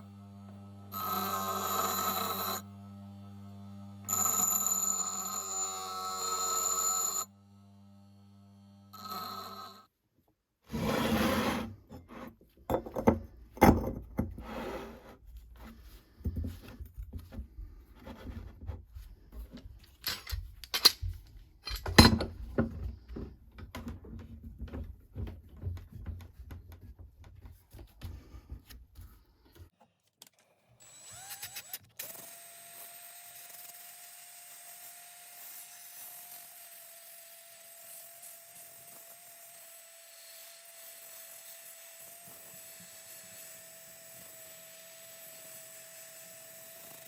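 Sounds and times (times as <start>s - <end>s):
hand tool scraping wood and metal: 0.9s - 2.6s, 10.7s - 22.7s.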